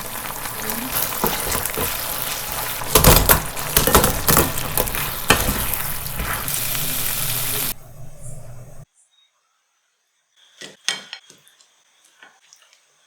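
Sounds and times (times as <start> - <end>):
food frying sizzle: 0.0 - 8.8
sharp knocks and clatters: 1.1 - 6.5.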